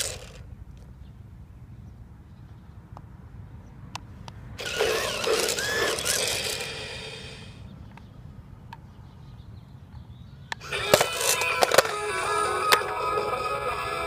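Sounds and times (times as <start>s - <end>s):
plastic toy train rattling: 0.0s - 0.4s, 4.6s - 7.4s, 10.6s - 12.1s.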